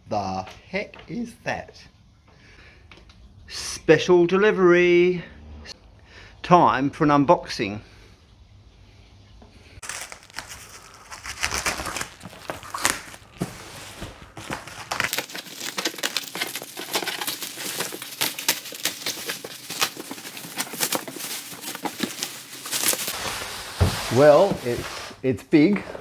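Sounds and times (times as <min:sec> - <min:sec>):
wrapping crinkling and tearing: 0:09.8 - 0:25.2.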